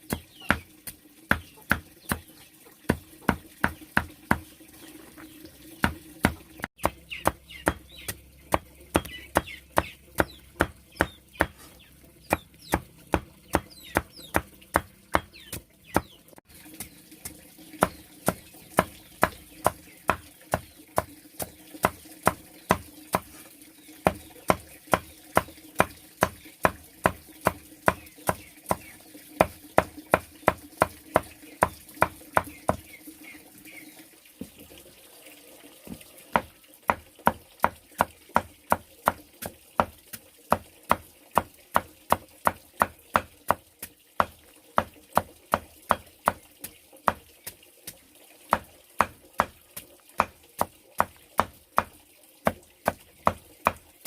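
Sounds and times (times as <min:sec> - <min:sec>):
knife chopping: 0:01.3 - 0:02.3, 0:05.8 - 0:16.1, 0:17.8 - 0:23.4, 0:24.1 - 0:32.8, 0:36.4 - 0:43.6, 0:44.2 - 0:46.4, 0:47.1 - 0:47.3, 0:48.5 - 0:49.6, 0:50.2 - 0:51.9.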